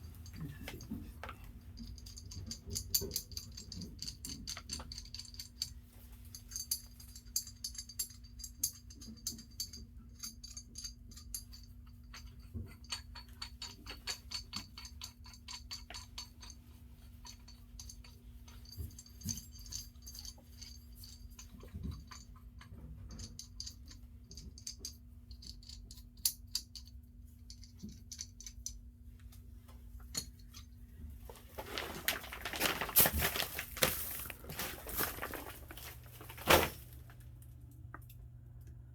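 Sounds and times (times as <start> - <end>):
rattling and handling noise: 0.0 - 38.2
steady low hum: 16.4 - 38.9.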